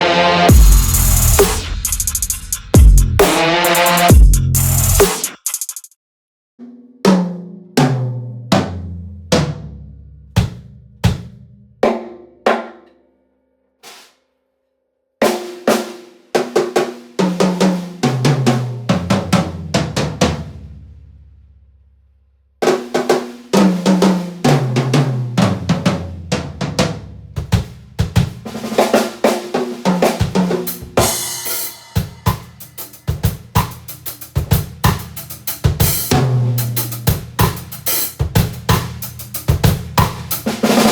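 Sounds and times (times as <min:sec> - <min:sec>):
cymbals crashing: 0:00.0 - 0:05.7
acoustic drum kit playing: 0:00.0 - 0:05.9, 0:10.4 - 0:11.4, 0:13.8 - 0:14.2, 0:22.7 - 0:40.9.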